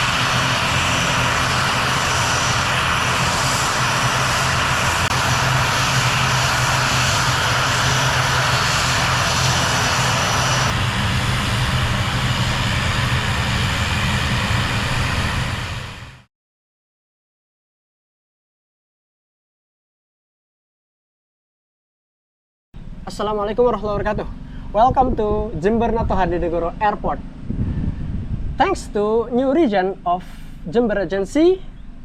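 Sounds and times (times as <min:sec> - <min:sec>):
turboprop engines humming: 0:00.0 - 0:16.3, 0:22.8 - 0:32.0.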